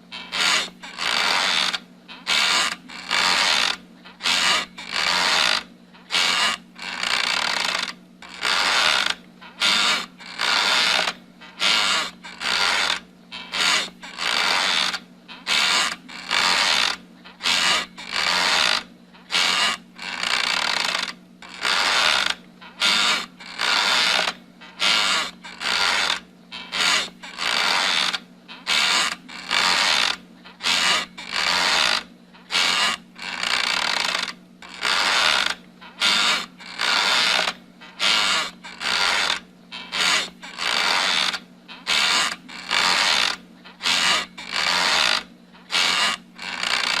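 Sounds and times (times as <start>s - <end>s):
faint steady hum: 0.0s - 47.0s
rocking chair creaking: 0.1s - 47.0s.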